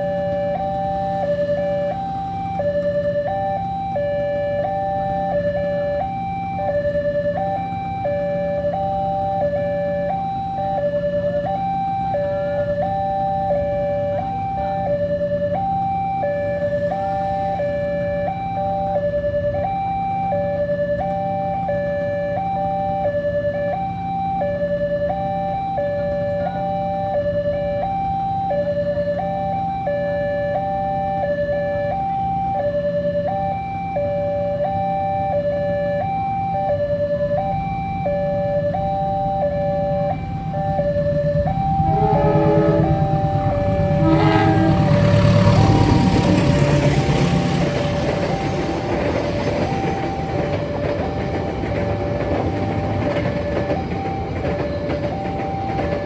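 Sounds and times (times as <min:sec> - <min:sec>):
two-tone level crossing siren: 0:00.0 - 0:56.0
low hum: 0:37.8 - 0:54.2.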